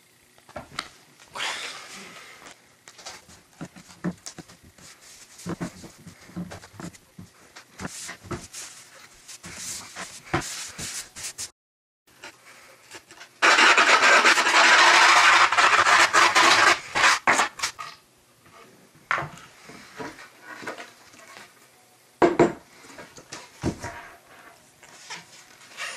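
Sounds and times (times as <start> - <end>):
rough rasping scrape: 13.4 - 17.6.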